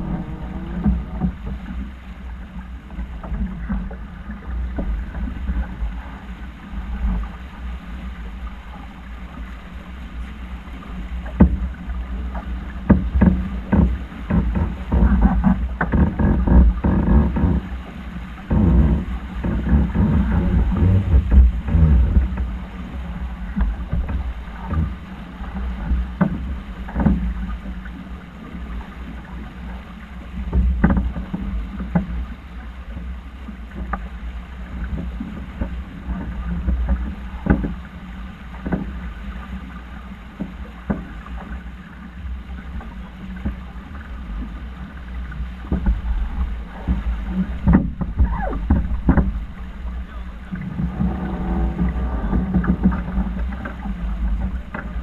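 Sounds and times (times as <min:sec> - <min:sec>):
wind buffeting microphone: 0:00.0 - 0:09.2, 0:10.5 - 0:27.8, 0:45.2 - 0:55.0
water washing along hull: 0:00.0 - 0:55.0.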